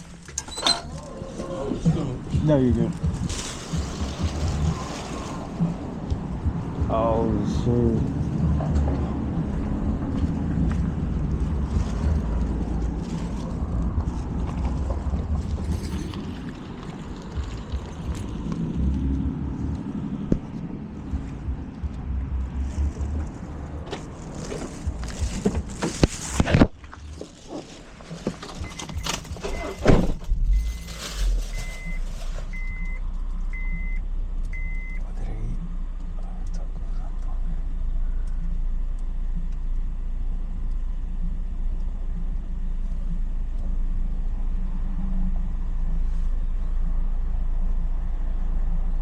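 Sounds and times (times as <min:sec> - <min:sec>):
vehicle engine starting and running: 0:00.0 - 0:49.0
car rumble and hiss: 0:01.1 - 0:49.0
electronic warning beep: 0:28.6 - 0:29.9, 0:30.5 - 0:35.0.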